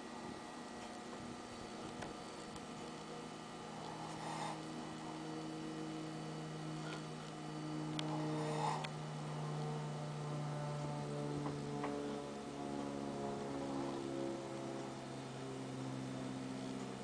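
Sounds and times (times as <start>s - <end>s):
steady low hum: 0.0s - 17.0s
pet snoring: 3.6s - 6.0s, 7.7s - 9.8s.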